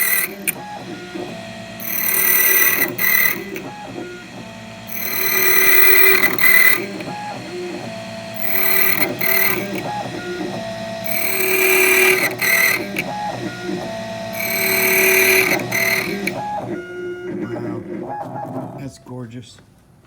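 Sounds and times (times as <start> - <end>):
key cutter high-pitched grinding: 0.0 - 19.2
stepper motors whining: 0.0 - 19.4.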